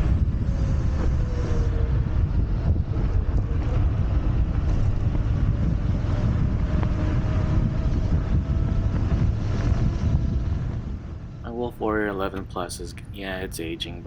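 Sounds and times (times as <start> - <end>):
wind buffeting microphone: 0.0 - 14.0
faint steady whine: 10.1 - 14.0.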